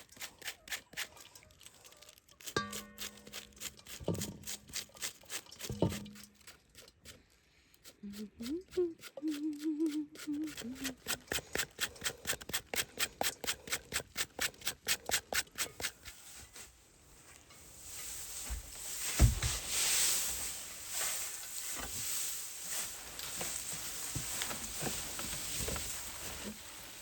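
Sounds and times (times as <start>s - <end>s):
fast scraping strokes: 7.8s - 16.6s
soft rustling hiss: 16.0s - 27.0s
sharp thump: 19.1s - 19.6s.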